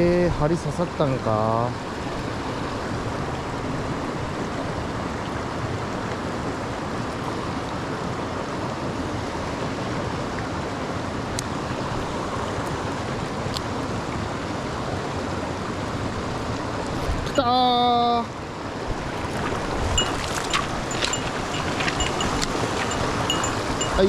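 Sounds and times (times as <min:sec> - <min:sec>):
stream water rushing over rocks: 0:18.4 - 0:24.0
faint ticks: 0:20.0 - 0:24.0.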